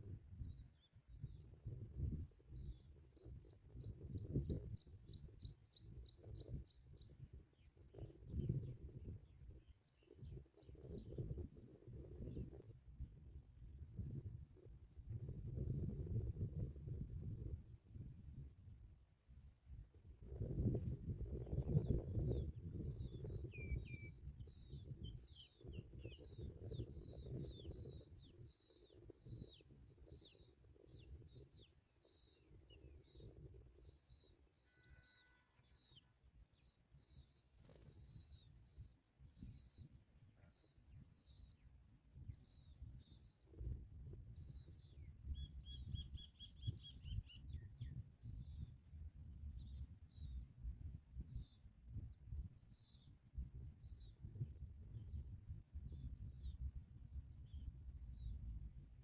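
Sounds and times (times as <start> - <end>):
small birds chirping: 0.4 - 18.1, 19.9 - 48.8
bird trill: 23.5 - 41.6.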